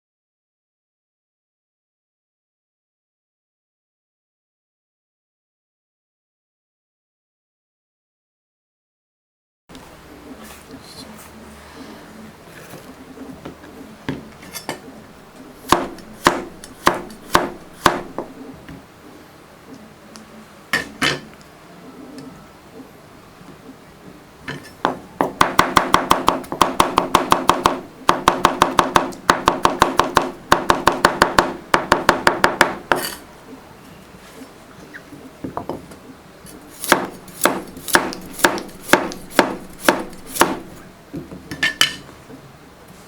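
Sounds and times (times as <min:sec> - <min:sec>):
knife chopping on cutting board: 0:15.7 - 0:18.3, 0:24.9 - 0:33.2, 0:36.8 - 0:40.8.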